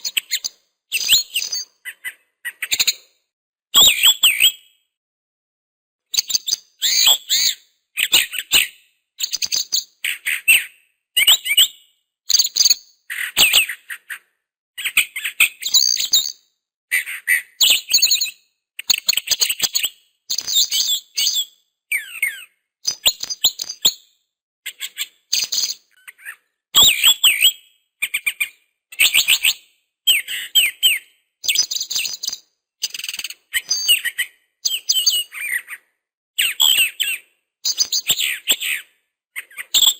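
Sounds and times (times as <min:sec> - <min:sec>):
songbird chirping: 0:00.0 - 0:03.2, 0:28.4 - 0:39.9.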